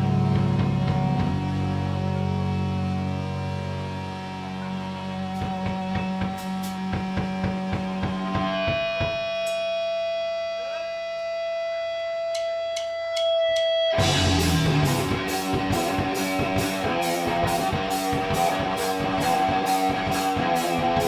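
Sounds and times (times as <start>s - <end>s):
rock band playing: 0.0s - 21.0s
electric guitar ringing note: 8.2s - 21.0s.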